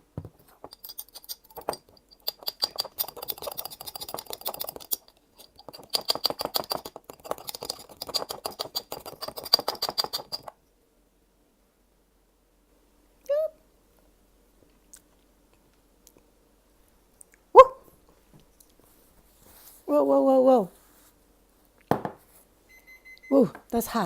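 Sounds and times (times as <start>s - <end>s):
spoon scraping in glass jar: 0.4s - 10.5s.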